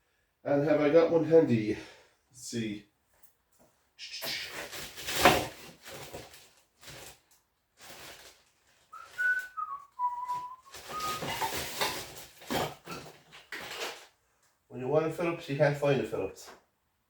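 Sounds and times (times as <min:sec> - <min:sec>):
person whistling: 0:08.9 - 0:11.4
tools clattering and knocking: 0:10.7 - 0:14.1.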